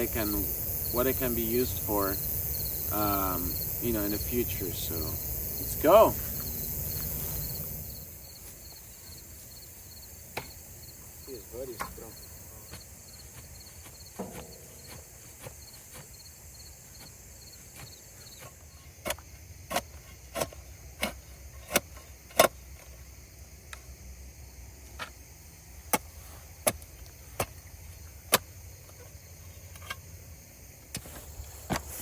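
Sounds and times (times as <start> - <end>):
insects chirping: 0.0 - 32.0
sharp knocks: 13.8 - 15.6.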